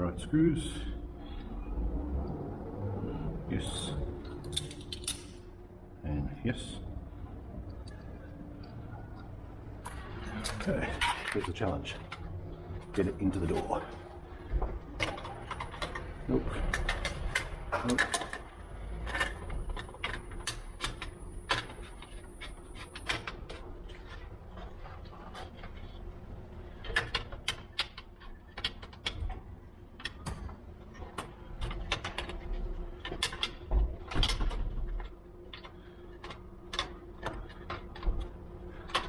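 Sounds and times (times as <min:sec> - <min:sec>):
faint steady hum: 0:00.0 - 0:39.0
metal bolt clicking and scraping: 0:04.4 - 0:05.4, 0:09.8 - 0:12.2.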